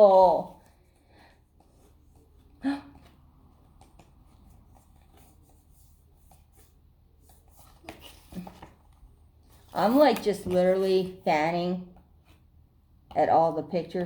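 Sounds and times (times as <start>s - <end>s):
soft clicks of pages: 0.6s - 10.6s
paper pages rustling: 0.6s - 11.2s.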